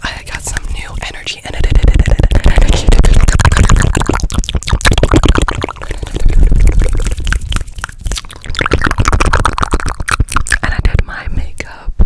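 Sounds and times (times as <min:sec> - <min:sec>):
hands rubbing near microphone: 0:00.0 - 0:03.3, 0:05.9 - 0:08.2
wet mouth clicks and smacks: 0:00.0 - 0:11.1.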